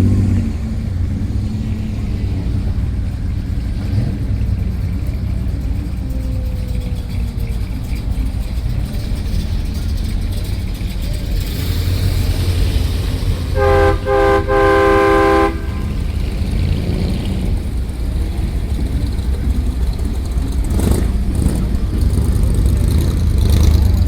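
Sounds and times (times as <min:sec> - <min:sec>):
car engines rumbling: 0:00.0 - 0:24.0
car horn honking: 0:13.2 - 0:16.4.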